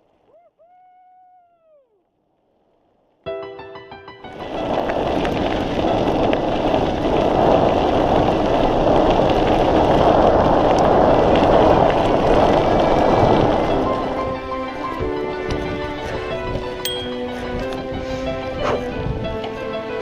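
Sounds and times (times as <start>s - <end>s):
tyres rolling on dirt trail: 0.0s - 0.3s, 4.2s - 20.0s
wind rushing over microphone: 4.3s - 20.0s.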